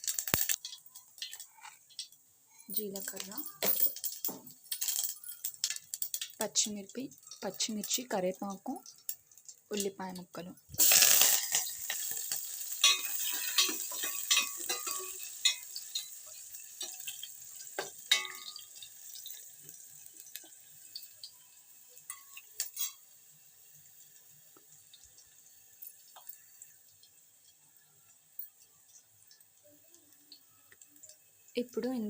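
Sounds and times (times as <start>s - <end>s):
stirring clicks and scrapes: 0.0s - 2.2s
spices sizzling in hot oil: 0.0s - 32.0s.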